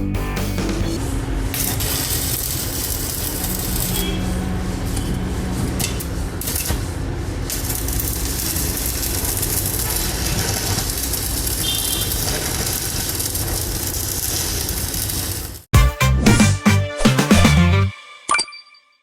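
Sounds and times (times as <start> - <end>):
welding arc crackling sizzle: 1.0 - 15.7.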